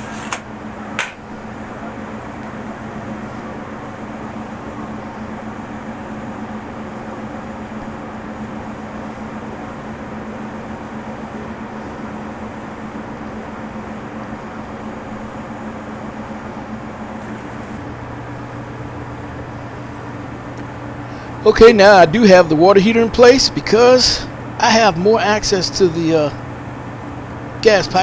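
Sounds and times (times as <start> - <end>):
low mechanical hum: 0.0 - 28.0.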